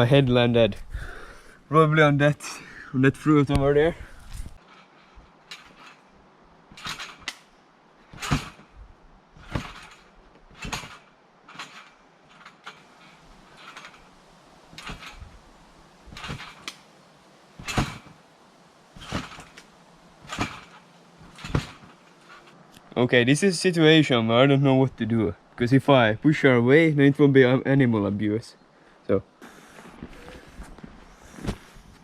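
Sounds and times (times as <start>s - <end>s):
trampoline thumping and creaking: 3.2s - 22.8s.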